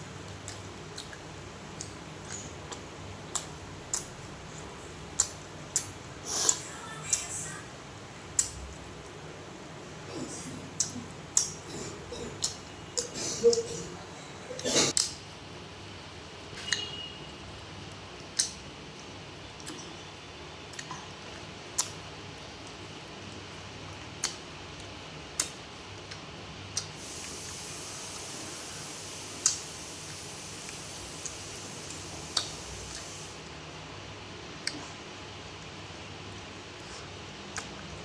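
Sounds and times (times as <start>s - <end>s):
wet mouth smacks chewing: 1.8s - 4.2s
faint steady hiss: 26.8s - 33.5s.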